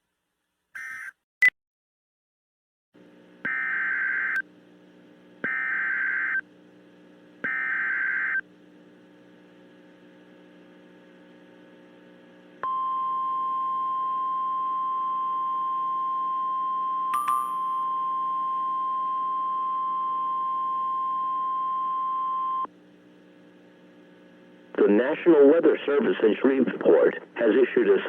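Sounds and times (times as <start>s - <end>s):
faint hum: 3.0s - 28.0s.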